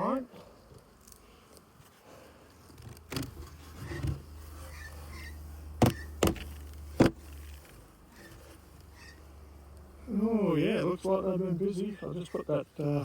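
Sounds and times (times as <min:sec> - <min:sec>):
beehive parts knocking: 0:05.8 - 0:07.3.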